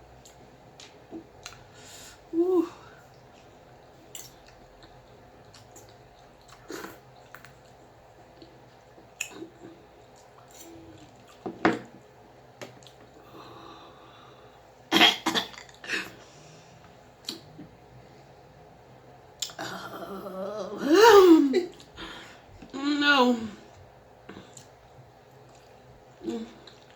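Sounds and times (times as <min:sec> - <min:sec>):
chewing with clicks and smacks: 0:03.1 - 0:11.5, 0:12.6 - 0:13.1, 0:24.3 - 0:25.8.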